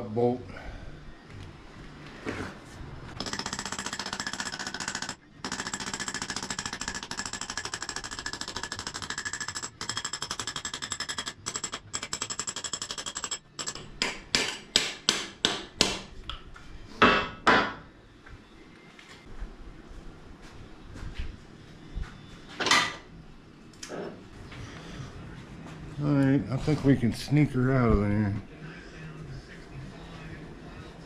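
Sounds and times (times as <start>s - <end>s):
impact wrench hammering: 3.2s - 16.1s.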